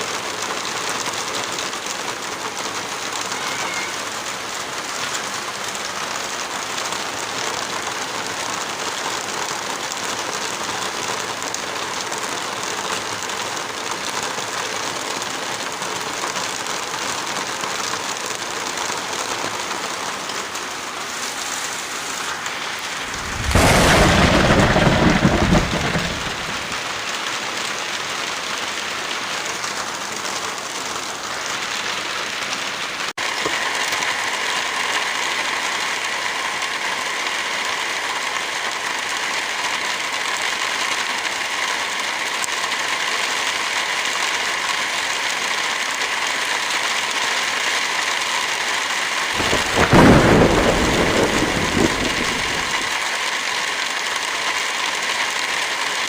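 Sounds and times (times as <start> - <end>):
heavy rain falling: 0.0 - 56.0
deep thunder crack: 23.0 - 27.0, 49.4 - 52.9.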